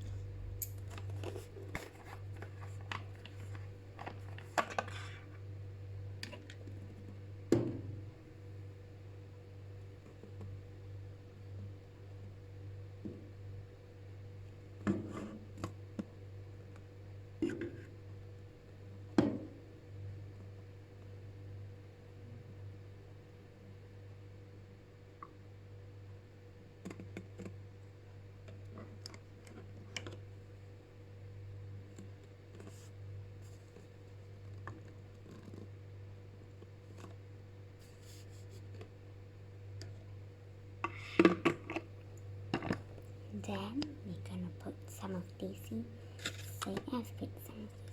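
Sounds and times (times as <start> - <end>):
steady low hum: 0.0 - 24.9, 30.3 - 47.9.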